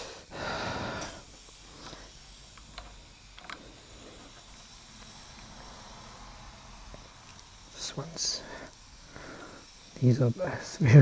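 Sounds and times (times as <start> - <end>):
heavy strained breath: 0.0 - 2.8, 3.4 - 10.0
screwdriver clicks and scrapes: 2.6 - 3.8.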